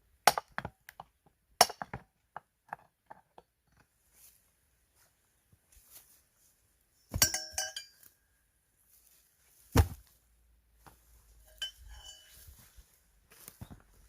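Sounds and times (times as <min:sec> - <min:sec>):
axe splitting firewood: 0:00.3 - 0:03.9, 0:09.7 - 0:10.1
sharp ringing clinks: 0:07.0 - 0:08.1, 0:11.5 - 0:12.4.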